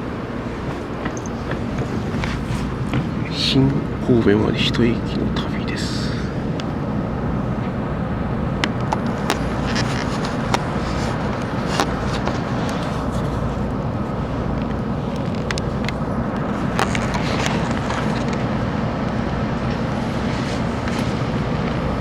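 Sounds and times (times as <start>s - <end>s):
train running rumble inside carriage: 0.0s - 22.0s
faint clicks: 8.6s - 18.5s.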